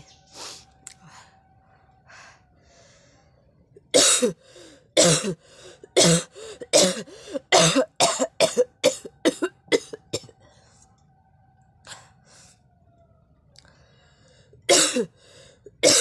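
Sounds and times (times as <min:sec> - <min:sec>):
person coughing hard: 0:03.9 - 0:04.4, 0:05.0 - 0:05.4, 0:06.0 - 0:10.3, 0:14.7 - 0:15.1, 0:15.8 - 0:16.0.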